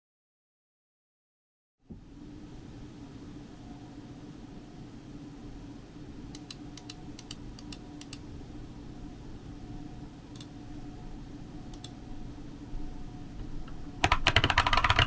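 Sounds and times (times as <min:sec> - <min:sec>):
steady low hum: 0:01.9 - 0:15.0
keyboard key clicks: 0:13.6 - 0:15.0.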